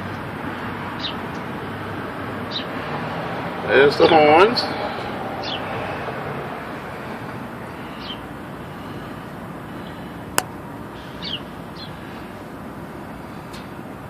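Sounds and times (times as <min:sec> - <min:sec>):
outdoor background noise: 0:00.0 - 0:14.0.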